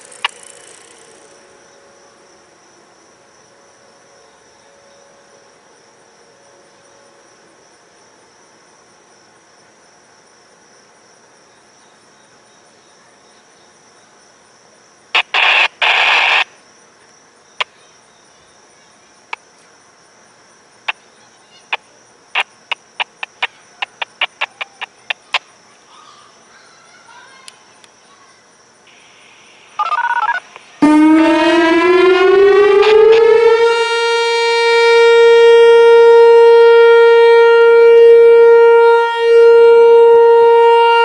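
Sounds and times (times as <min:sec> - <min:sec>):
sharp clicks: 0:00.0 - 0:01.3, 0:15.2 - 0:16.4, 0:22.4 - 0:25.4
loud hissing noise: 0:00.0 - 0:01.4, 0:15.1 - 0:16.6, 0:28.8 - 0:30.9
crickets chirping: 0:00.0 - 0:41.0.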